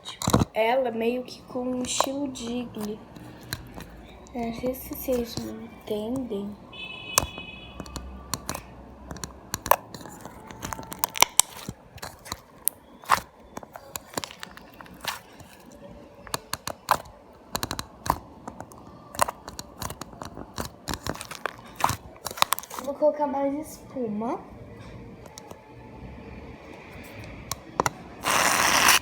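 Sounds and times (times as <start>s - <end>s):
slime clicking and popping: 7.1s - 15.6s, 16.3s - 22.8s.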